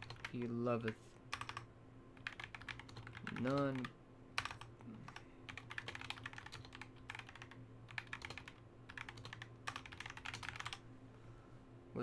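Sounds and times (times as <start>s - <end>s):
typing on keyboard: 0.0s - 0.4s, 1.3s - 1.6s, 2.2s - 4.7s, 5.5s - 10.8s
low steady hum: 0.0s - 12.0s.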